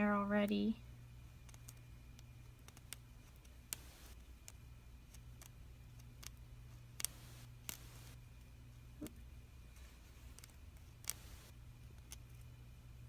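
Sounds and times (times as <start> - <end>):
low steady hum: 0.0 - 13.0
toothpick clicking and scratching: 1.4 - 6.4, 10.3 - 12.5.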